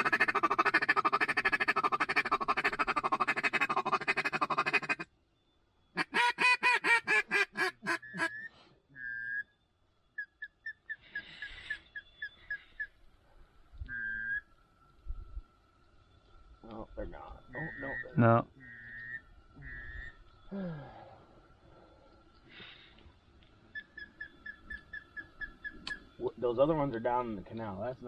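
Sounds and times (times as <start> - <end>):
duck quacking: 0.0 - 5.0, 6.0 - 8.4.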